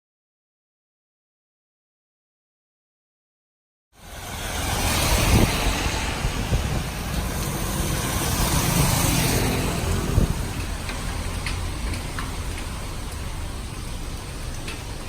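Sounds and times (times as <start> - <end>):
wind buffeting microphone: 4.1 - 15.0.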